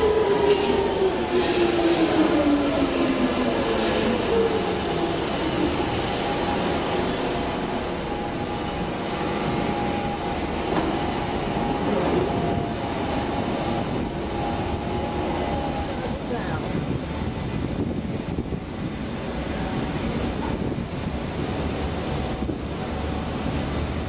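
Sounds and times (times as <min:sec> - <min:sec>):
train wheels rumbling on rail: 0:00.0 - 0:24.0.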